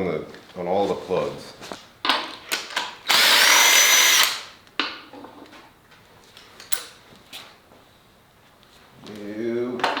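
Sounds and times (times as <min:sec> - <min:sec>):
power tool motor whining: 0:03.1 - 0:04.4.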